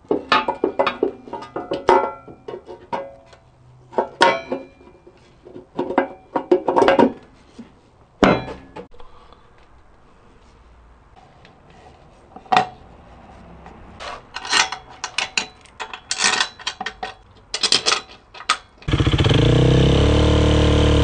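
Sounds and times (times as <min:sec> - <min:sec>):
metal clinks and knocks: 0:14.3 - 0:18.8.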